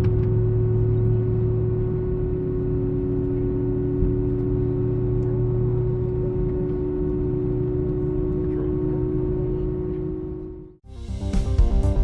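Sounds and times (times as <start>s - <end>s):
airliner cabin engine hum: 0.0s - 12.0s.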